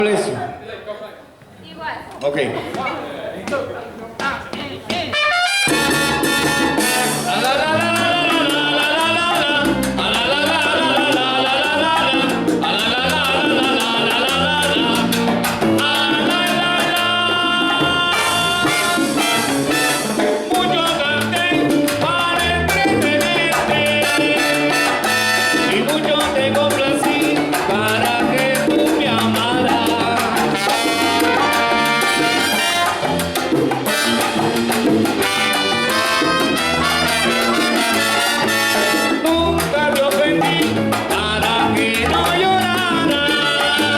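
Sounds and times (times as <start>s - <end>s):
live salsa band playing: 1.6s - 43.9s
trumpet and trombone horns: 5.1s - 9.3s, 18.0s - 20.6s, 22.9s - 26.1s, 30.2s - 39.6s.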